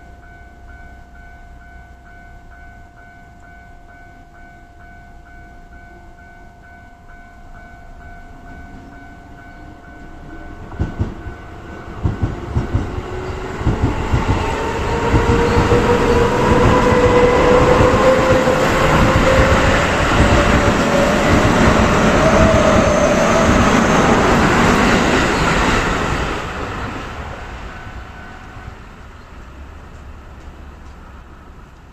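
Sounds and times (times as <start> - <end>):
level crossing alarm ringing: 0.0 - 28.8
electric train motor whine: 8.9 - 28.8
train wheels clacking over rail joints: 10.7 - 25.9.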